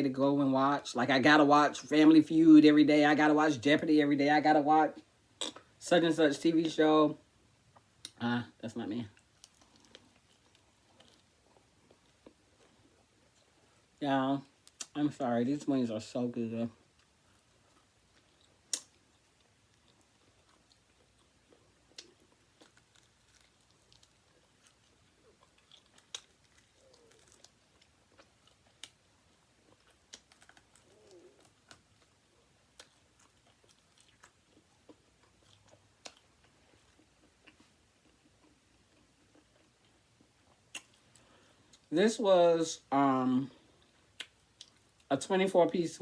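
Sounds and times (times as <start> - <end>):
chewing crunchy food: 9.1 - 15.0, 16.8 - 41.9, 43.5 - 45.1.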